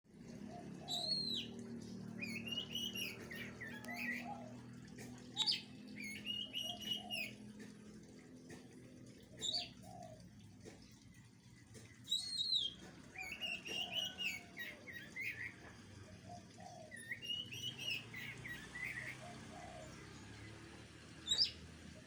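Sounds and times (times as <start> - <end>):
low steady hum: 0.1 - 22.0
bird whistled calls: 0.9 - 1.5, 2.2 - 4.4, 16.9 - 19.2.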